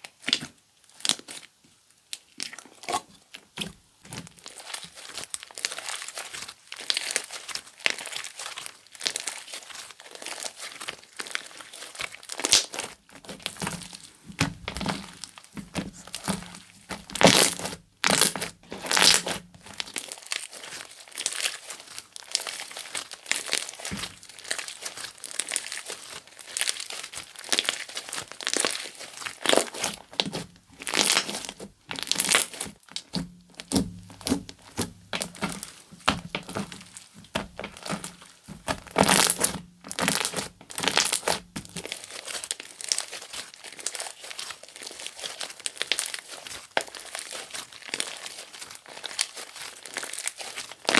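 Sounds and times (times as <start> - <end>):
slime squelching by hand: 2.4 - 50.9.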